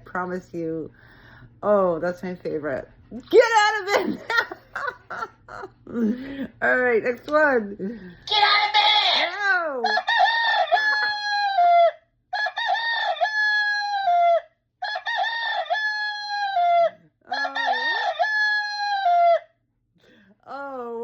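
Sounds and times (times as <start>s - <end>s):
alarm clock rooster crowing: 9.9s - 19.4s.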